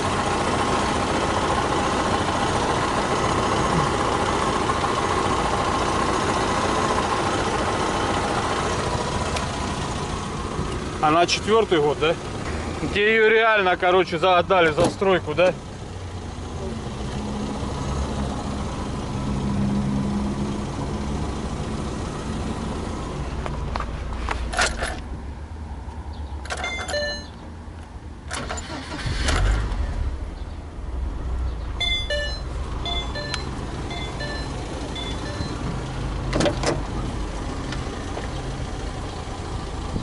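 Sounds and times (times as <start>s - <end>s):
car engine running: 0.0s - 19.4s, 26.6s - 40.0s
short high chirps: 31.8s - 35.6s.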